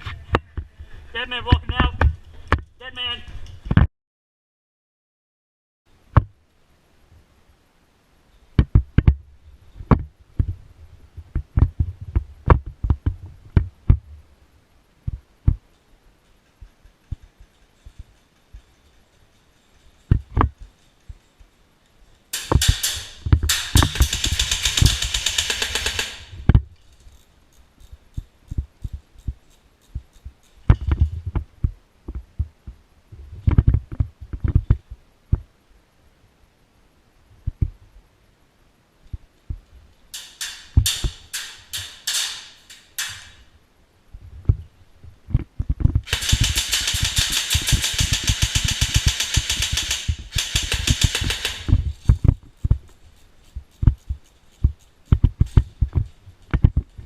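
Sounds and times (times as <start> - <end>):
airsoft guns firing full-auto: 22.7 - 26.3, 46.1 - 51.7.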